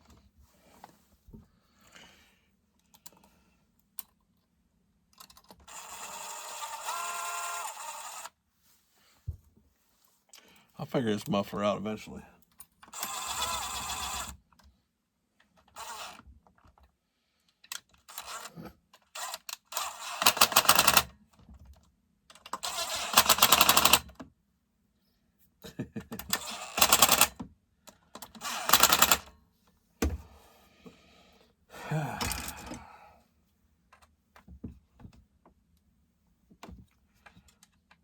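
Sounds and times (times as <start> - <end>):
hand ratchet clicking: 19.2 - 21.1, 22.6 - 24.0, 26.3 - 27.3, 28.2 - 29.3.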